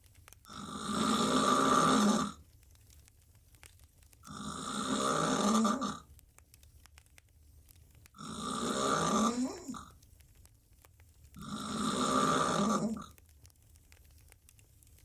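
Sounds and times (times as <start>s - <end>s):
woman snoring loudly: 0.5s - 2.4s, 4.3s - 6.0s, 8.2s - 9.8s, 11.4s - 13.0s.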